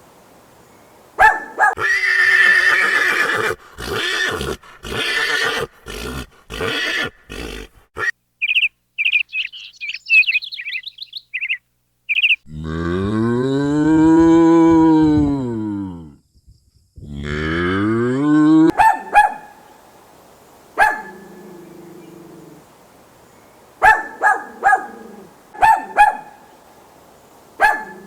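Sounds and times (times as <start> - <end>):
small bird chirping: 8.4 - 12.5
cow mooing: 12.5 - 16.1, 17.0 - 18.8
large animal roaring: 12.5 - 16.2, 17.0 - 18.7.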